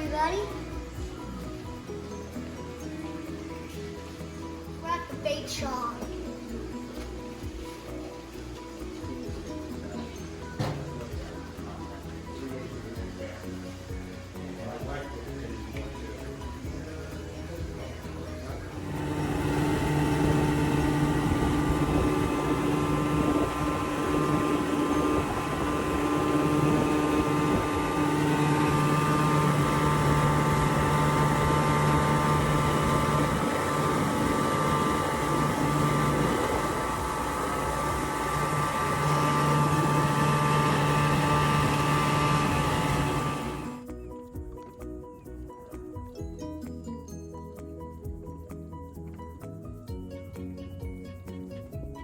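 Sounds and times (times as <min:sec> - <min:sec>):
outboard motor running: 0:05.9 - 0:43.9
constant rushing noise: 0:18.6 - 0:43.8.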